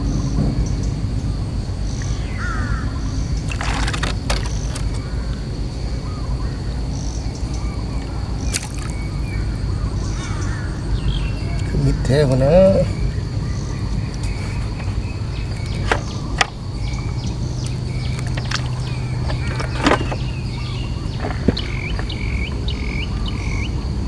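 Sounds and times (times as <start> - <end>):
bird calls: 1.9 - 24.0
water sloshing: 3.2 - 5.2, 8.4 - 9.7, 12.9 - 23.7.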